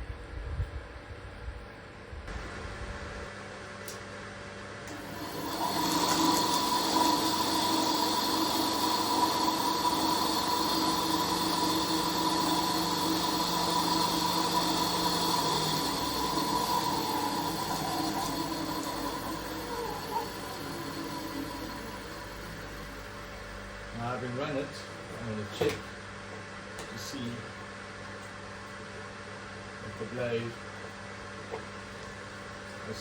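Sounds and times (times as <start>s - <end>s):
bandsaw running: 4.9s - 23.5s.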